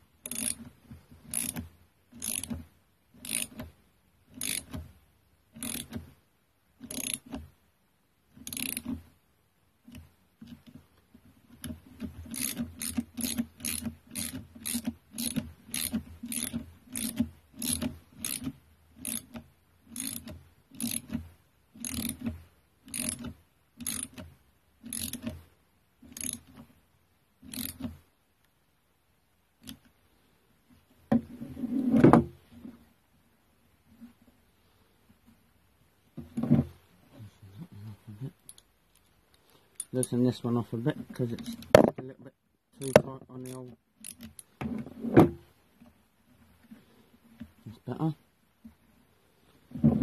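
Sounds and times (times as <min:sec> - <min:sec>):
ratchet wrench clicking: 0:00.2 - 0:02.6, 0:03.2 - 0:03.6, 0:04.3 - 0:04.9, 0:05.6 - 0:06.0, 0:06.8 - 0:07.4, 0:08.4 - 0:09.0, 0:11.6 - 0:21.2, 0:21.8 - 0:25.4, 0:26.1 - 0:26.7, 0:27.4 - 0:28.0, 0:42.8 - 0:44.5.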